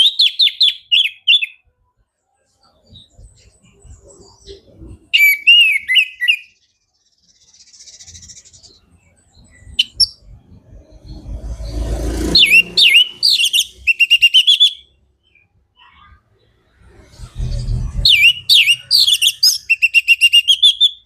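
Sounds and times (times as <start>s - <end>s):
thrush singing whistled notes: 2.8s - 8.8s, 9.4s - 15.5s, 16.7s - 21.0s
short low rumbling: 16.7s - 18.4s.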